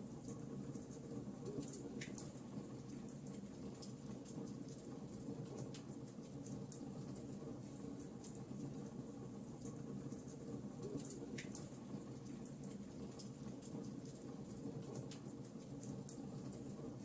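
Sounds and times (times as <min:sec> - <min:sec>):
fire crackling and popping: 0:11.0 - 0:16.8.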